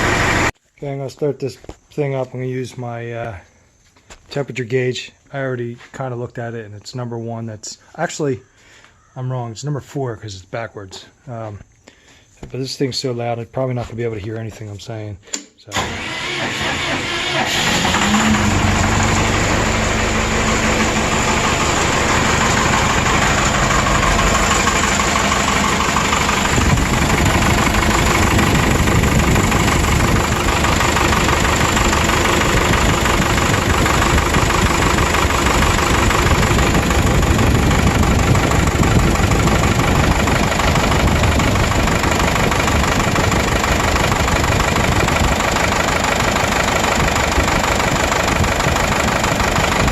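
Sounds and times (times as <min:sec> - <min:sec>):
diesel engine running loudly: 0:00.0 - 0:00.5, 0:15.8 - 0:49.9.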